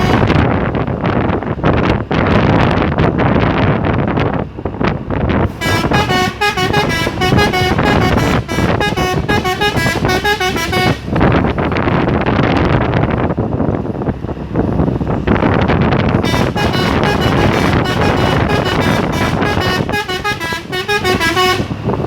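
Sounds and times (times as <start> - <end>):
truck musical horn tune: 0.0 - 0.4, 5.4 - 12.0, 16.1 - 22.0
road noise: 0.0 - 22.0
wind on microphone: 0.0 - 22.0.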